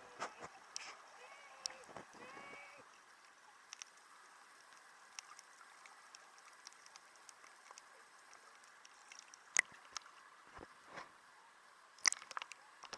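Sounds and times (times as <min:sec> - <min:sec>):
faint water hiss: 0:00.0 - 0:12.9
small clicks and pops: 0:03.6 - 0:11.1, 0:11.9 - 0:12.9.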